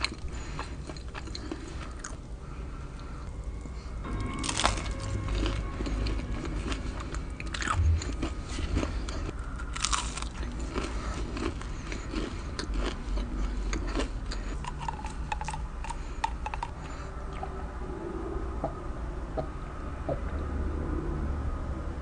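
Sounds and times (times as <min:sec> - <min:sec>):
crunching churros: 0:00.0 - 0:02.3, 0:04.2 - 0:17.0.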